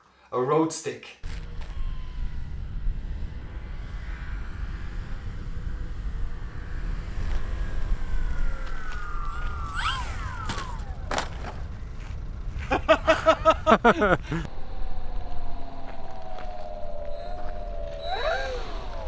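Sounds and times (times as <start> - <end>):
model plane motor whine: 1.2 - 19.0
rapid pitched pulses: 1.4 - 14.5
plane crashing into pole: 7.1 - 13.4.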